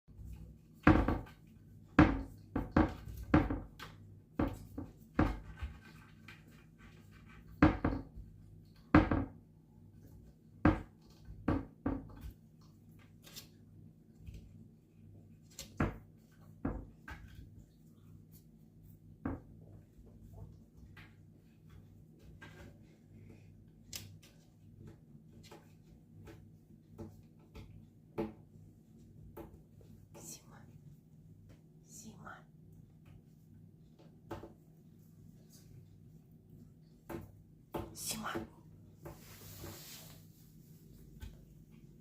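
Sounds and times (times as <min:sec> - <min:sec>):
knocks and clatters of hard objects: 0:00.2 - 0:09.4, 0:10.6 - 0:12.4.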